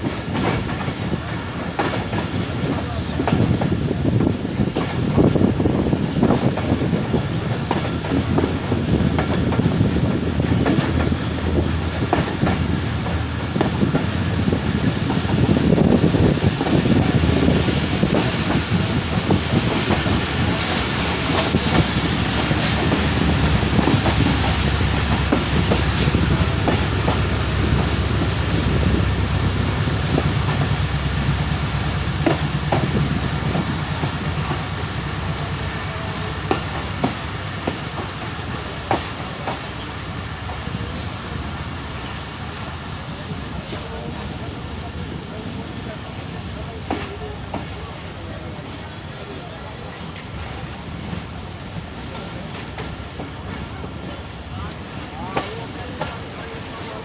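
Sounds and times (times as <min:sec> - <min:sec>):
wheels clattering over rail joints: 0:00.0 - 0:41.0
train rumbling: 0:00.0 - 0:57.0.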